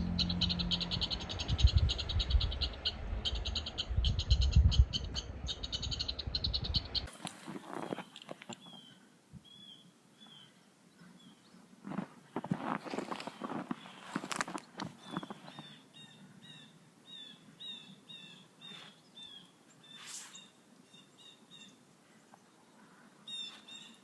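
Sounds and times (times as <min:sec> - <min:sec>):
wind rumble on microphone: 0:00.0 - 0:07.1.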